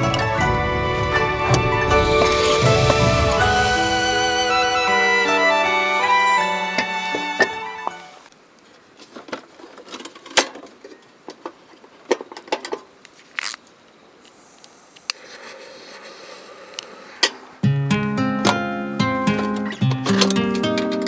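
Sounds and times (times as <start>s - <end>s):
music: 0.0s - 8.3s, 17.6s - 21.0s
background hiss: 0.0s - 9.2s, 12.9s - 21.0s.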